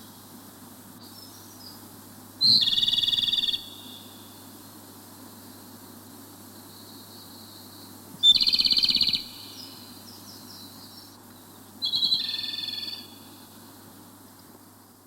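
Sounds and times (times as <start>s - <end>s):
distant birds or insects: 0.0s - 15.0s
bird trilling call: 11.8s - 13.2s.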